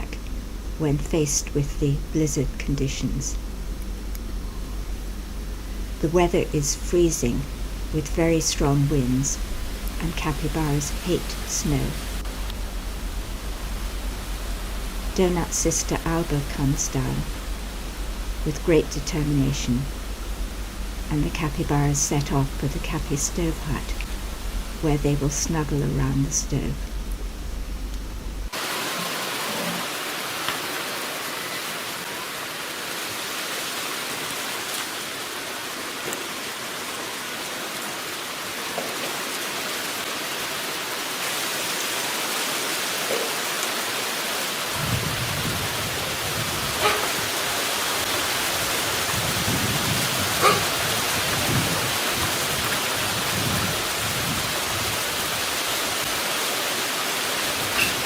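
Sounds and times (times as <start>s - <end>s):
blizzard wind hissing: 44.5s - 58.0s
wind gusts buffeting microphone: 44.7s - 56.2s.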